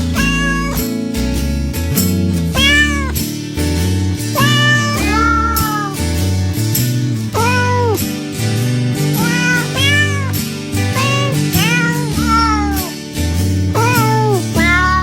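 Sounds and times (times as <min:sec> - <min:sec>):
cat meowing: 0:00.0 - 0:00.9, 0:02.5 - 0:03.2, 0:04.4 - 0:06.0, 0:07.4 - 0:08.0, 0:09.2 - 0:12.9, 0:13.8 - 0:15.0
background music with bass line: 0:00.0 - 0:15.0.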